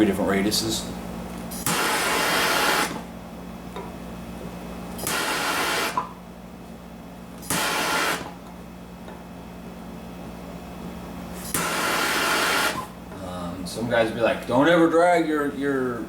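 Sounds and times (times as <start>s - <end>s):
steady low hum: 0.0s - 16.0s
torch flame hissing: 1.6s - 3.1s, 5.0s - 6.1s, 7.4s - 8.4s, 11.4s - 13.0s.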